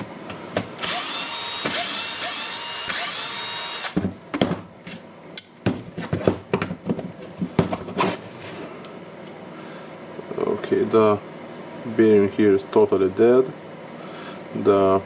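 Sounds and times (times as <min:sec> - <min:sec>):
small power tool whirring: 0:00.8 - 0:04.0.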